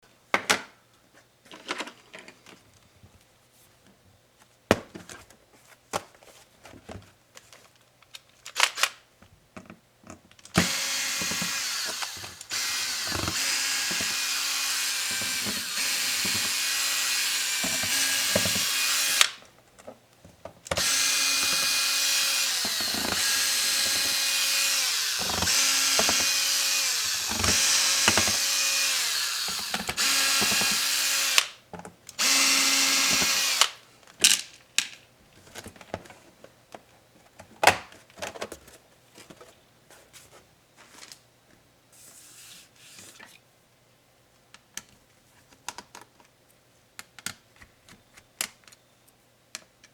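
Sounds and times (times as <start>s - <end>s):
electric screwdriver running: 10.6s - 19.4s, 20.7s - 31.6s, 32.2s - 33.8s
clicks of screws and plastic parts: 20.6s - 35.0s, 47.0s - 48.8s, 49.5s - 49.9s.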